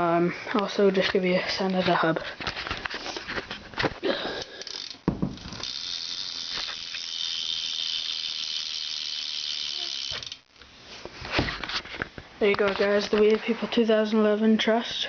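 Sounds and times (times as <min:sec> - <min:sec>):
bicycle hub ratcheting buzz: 0:04.0 - 0:10.7
freewheel clicks: 0:04.4 - 0:10.5.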